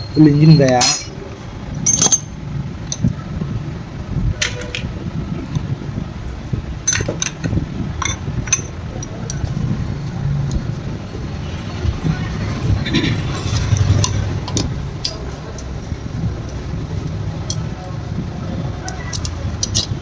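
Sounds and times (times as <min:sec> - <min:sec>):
metal parts and tools clinking: 0:00.0 - 0:03.1, 0:04.4 - 0:04.9, 0:06.8 - 0:09.5, 0:13.4 - 0:15.7, 0:18.9 - 0:20.0.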